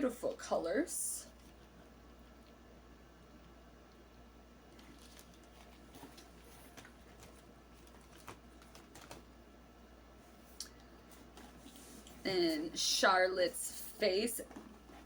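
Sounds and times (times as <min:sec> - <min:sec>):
packaging clicks and taps: 0:05.0 - 0:09.3.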